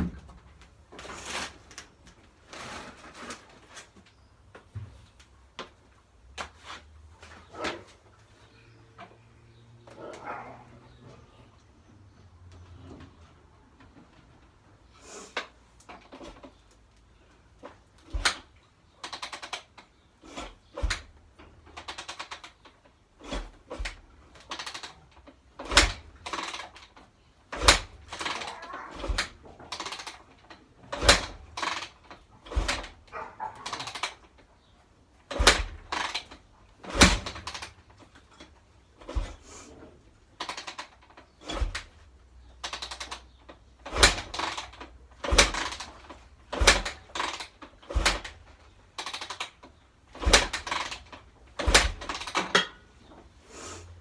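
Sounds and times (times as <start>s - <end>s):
dirt bike engine turning over: 17.6s - 53.2s
kick-start thump: 32.5s - 33.0s.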